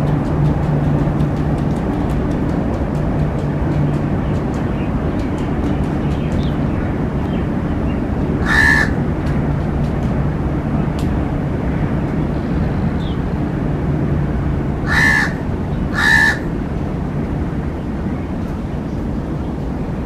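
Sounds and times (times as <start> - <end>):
steady low rumble: 0.0 - 20.0
crow cawing: 8.4 - 9.0, 14.8 - 16.5.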